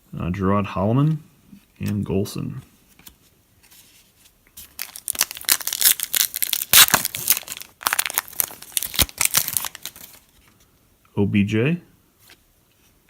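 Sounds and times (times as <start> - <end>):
plastic wrapper tearing and crinkling: 4.6 - 10.4.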